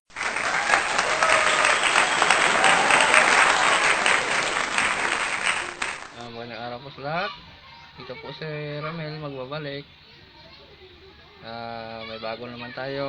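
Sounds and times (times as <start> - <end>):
crowd applauding: 0.1 - 6.3
faint crowd voices: 0.1 - 13.0.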